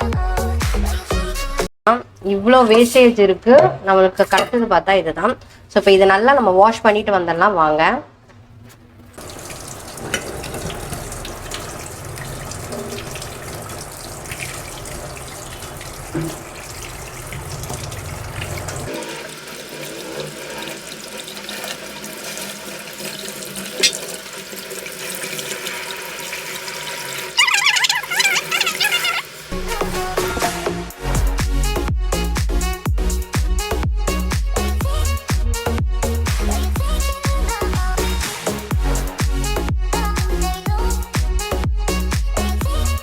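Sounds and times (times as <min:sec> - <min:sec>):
tap water running into sink: 0:09.2 - 0:29.5
pitched warbling sound: 0:27.4 - 0:29.3.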